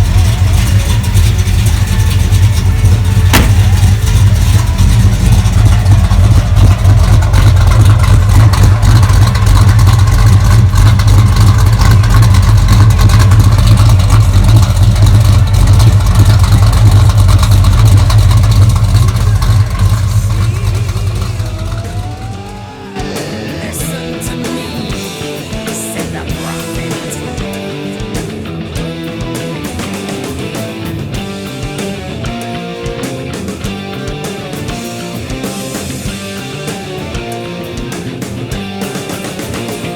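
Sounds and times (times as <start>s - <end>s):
car engine deep rumble: 0.0s - 37.6s.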